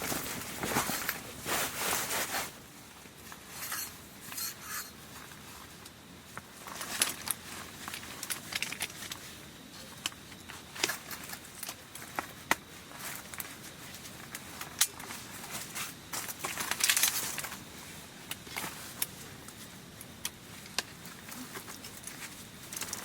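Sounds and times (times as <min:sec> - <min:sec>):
rustling: 0:00.0 - 0:23.0
small clicks and scrapes: 0:03.3 - 0:23.0.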